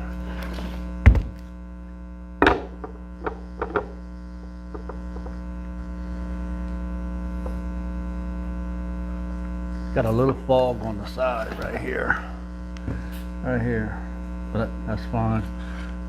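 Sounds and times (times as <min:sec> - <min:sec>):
steady electrical hum: 0:00.0 - 0:16.0
loud knock on workbench: 0:01.0 - 0:01.3, 0:02.4 - 0:03.9.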